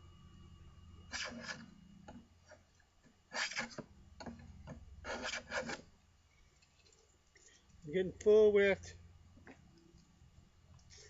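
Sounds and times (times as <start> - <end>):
hand plane shaving wood: 1.1 - 1.7, 3.3 - 3.8, 5.0 - 5.9.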